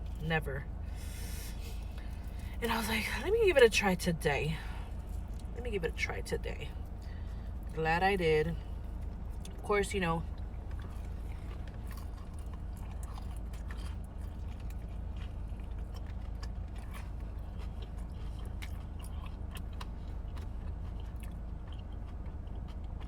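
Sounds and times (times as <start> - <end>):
low steady hum: 0.0 - 23.0
chewing chicken wings: 10.2 - 23.0.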